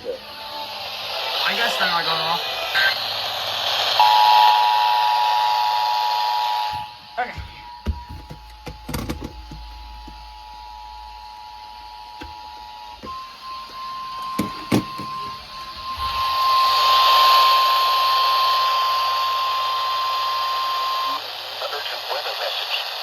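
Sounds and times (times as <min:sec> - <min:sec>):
radio hiss: 0:00.0 - 0:07.8, 0:16.2 - 0:23.0
steady warning tone: 0:00.0 - 0:22.2
sharp clicks and knocks: 0:07.8 - 0:10.2.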